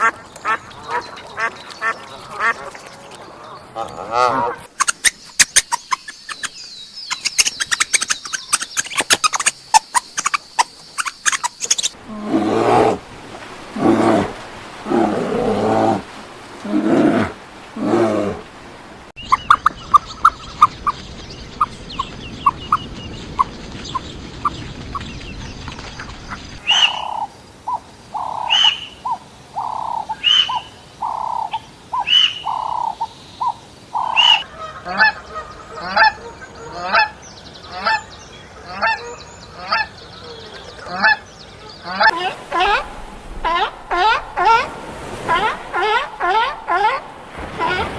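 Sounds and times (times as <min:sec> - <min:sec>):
bird calling loudly: 0:03.8 - 0:12.0, 0:41.8 - 0:47.9.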